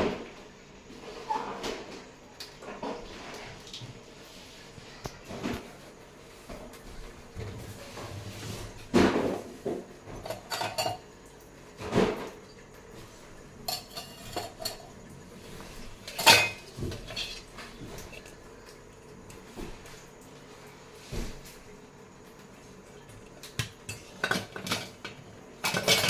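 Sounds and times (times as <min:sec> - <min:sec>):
dishes and cutlery clinking: 0:10.1 - 0:11.1, 0:13.6 - 0:15.0, 0:16.0 - 0:18.4, 0:23.4 - 0:26.0.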